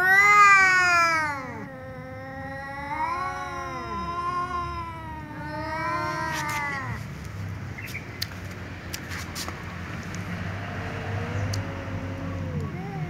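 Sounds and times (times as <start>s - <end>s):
cats yowling: 0.0s - 7.1s, 12.1s - 13.0s.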